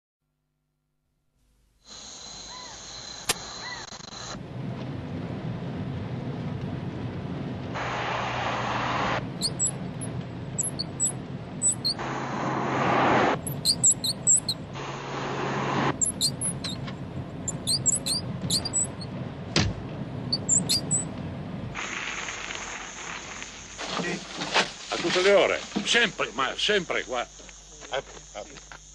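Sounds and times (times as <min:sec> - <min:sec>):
car running and road noise: 0:04.1 - 0:26.1
high-pitched squeaks: 0:09.4 - 0:12.1, 0:13.3 - 0:14.7, 0:15.9 - 0:16.8, 0:17.5 - 0:19.1, 0:20.3 - 0:21.1.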